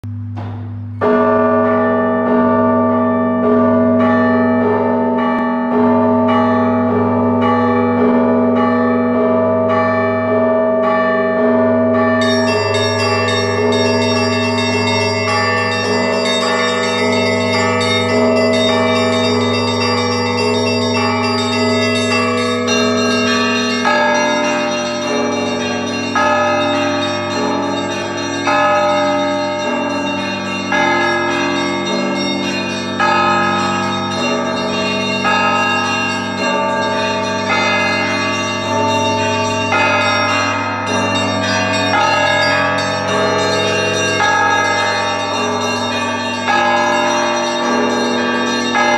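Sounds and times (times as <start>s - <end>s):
deep hum of large bell: 0.0s - 48.9s
small bells chiming quickly: 12.2s - 48.9s.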